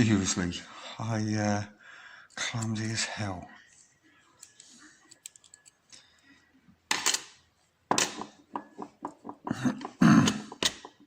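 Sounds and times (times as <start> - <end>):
metal tools clicking and clattering: 4.4 - 5.8, 6.9 - 11.0.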